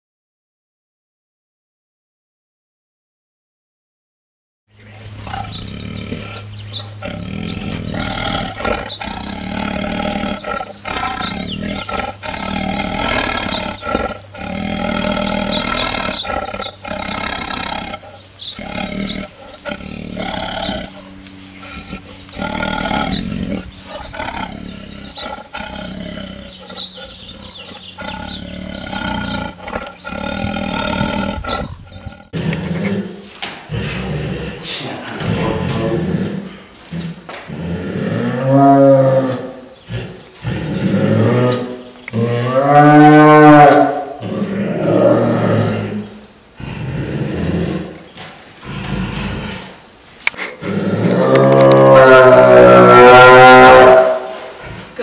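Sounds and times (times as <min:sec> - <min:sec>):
low steady hum: 0:04.7 - 0:38.3
tiger roaring and growling: 0:04.8 - 0:55.0.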